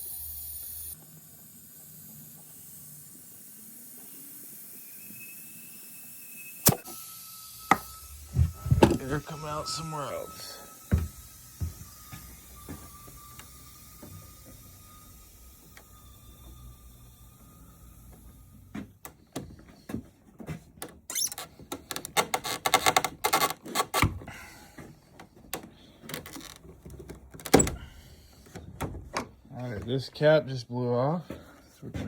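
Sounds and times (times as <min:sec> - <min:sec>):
compressed air hissing: 0:00.0 - 0:18.7
pipe fittings and tools rattling: 0:07.7 - 0:09.8.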